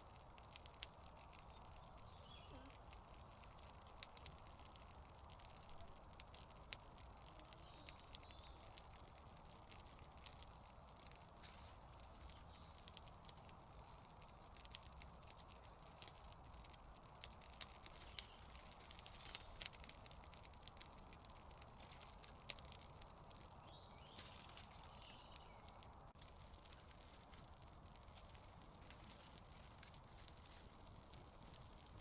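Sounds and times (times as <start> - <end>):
campfire crackling and popping: 0.0 - 32.0.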